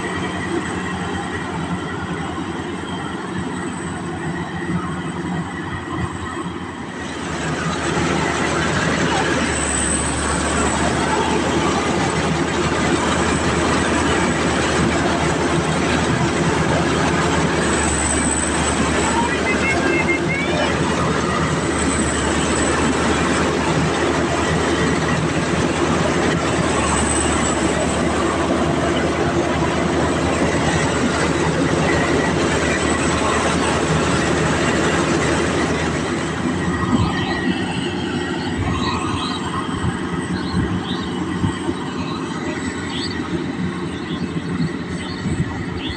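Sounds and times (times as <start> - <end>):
combine harvester running: 0.0 - 45.9.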